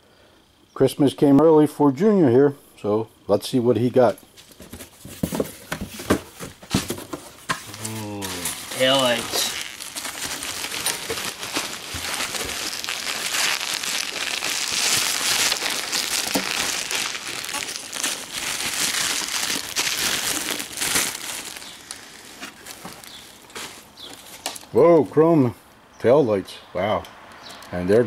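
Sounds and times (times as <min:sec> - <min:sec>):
packaging crinkling: 0:04.4 - 0:24.7.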